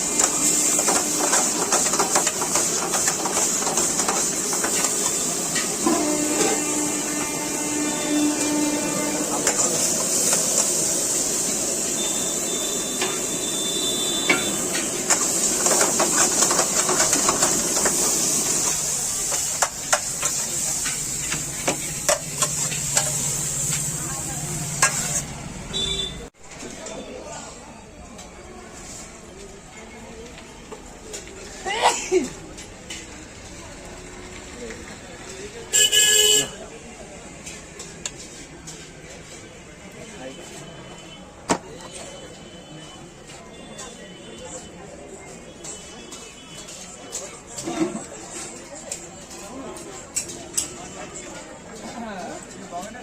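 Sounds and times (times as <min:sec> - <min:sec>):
metal utensils clanking against pan: 0:00.0 - 0:05.9, 0:14.2 - 0:23.9, 0:24.7 - 0:25.3
metal ladle scraping a pan: 0:24.8 - 0:25.3.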